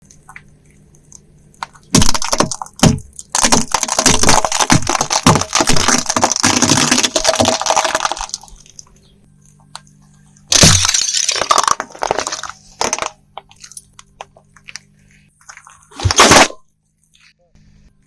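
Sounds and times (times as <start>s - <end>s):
tyre crushing brittle object: 1.6s - 8.9s, 10.5s - 14.0s, 15.4s - 16.6s.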